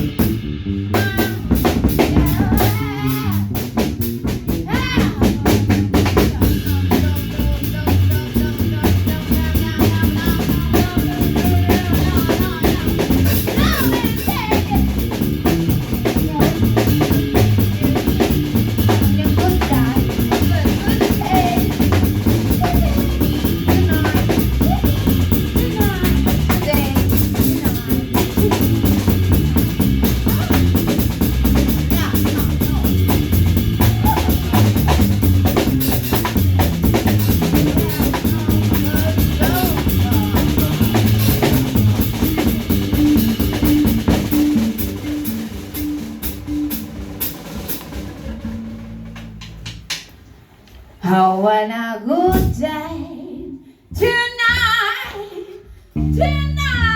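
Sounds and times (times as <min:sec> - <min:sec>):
drum kit beat: 0:00.0 - 0:50.6, 0:52.3 - 0:53.1
live band playing: 0:00.0 - 0:50.6.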